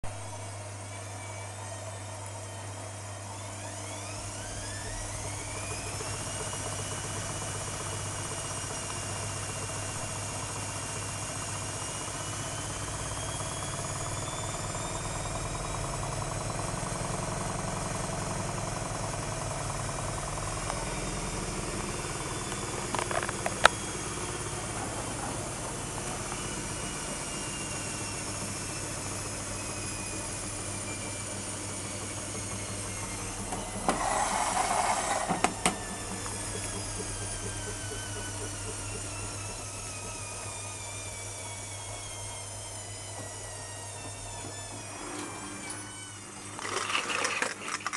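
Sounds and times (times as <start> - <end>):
washing machine drum spinning: 3.8 - 45.0.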